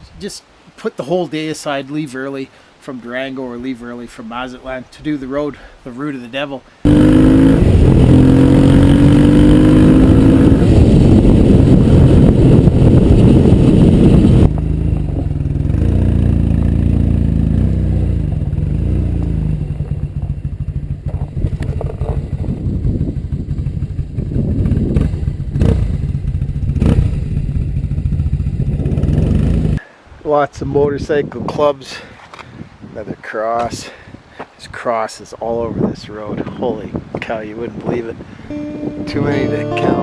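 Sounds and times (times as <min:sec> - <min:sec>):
motorcycle engine accelerating: 0:06.9 - 0:29.8, 0:38.5 - 0:40.0.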